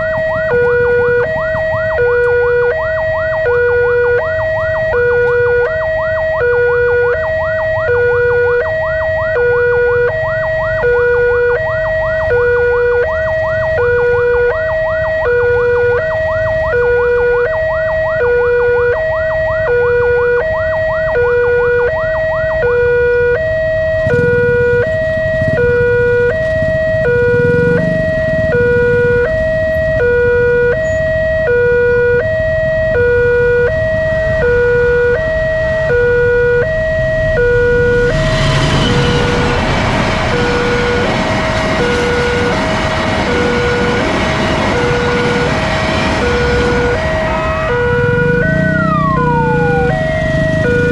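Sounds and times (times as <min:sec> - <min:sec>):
level crossing two-tone alarm: 0:00.0 - 0:50.9
low rumble: 0:34.0 - 0:50.9.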